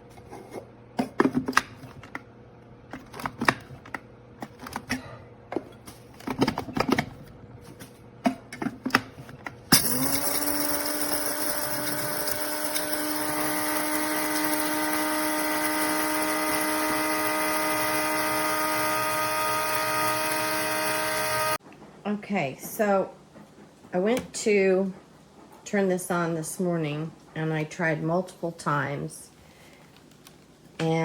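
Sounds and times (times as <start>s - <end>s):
grinder motor whine: 9.7s - 21.6s.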